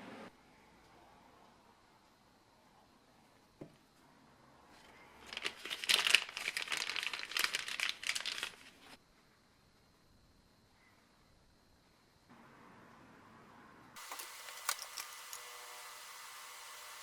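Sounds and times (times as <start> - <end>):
crinkling and rustling: 4.7 - 9.0, 14.0 - 17.0.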